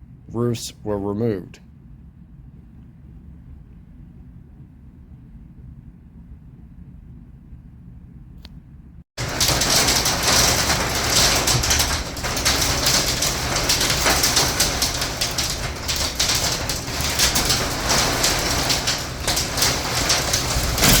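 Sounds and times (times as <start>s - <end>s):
heavy rain: 9.2s - 21.0s
low rumble: 9.2s - 21.0s.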